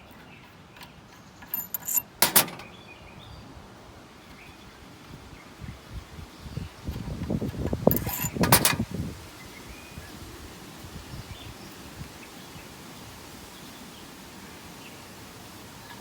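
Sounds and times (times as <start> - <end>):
rustling handling noise: 0.0 - 2.8, 7.6 - 8.9
sharp metal clanks: 1.4 - 2.8, 7.9 - 8.9.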